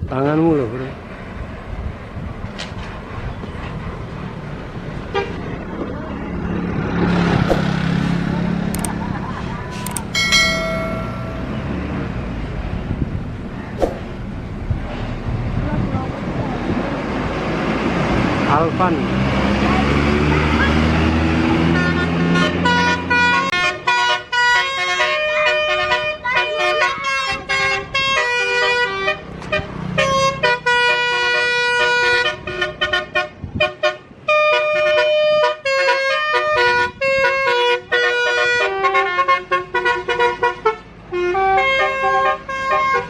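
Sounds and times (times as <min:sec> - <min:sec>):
bus engine running low: 0:00.0 - 0:43.0
bus air horns playing a tune: 0:21.6 - 0:43.0.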